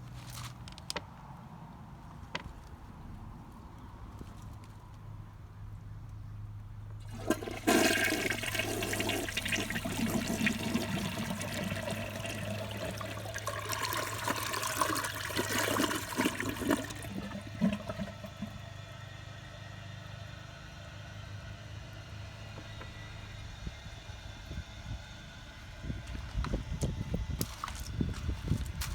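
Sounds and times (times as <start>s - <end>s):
low steady hum: 2.5s - 28.9s
toilet tank refilling: 7.0s - 18.7s
toilet flushing: 7.0s - 18.8s.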